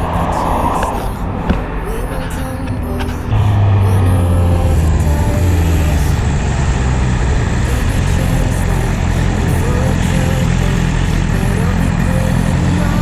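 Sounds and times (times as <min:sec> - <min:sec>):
motorcycle engine drone: 0:03.4 - 0:13.0.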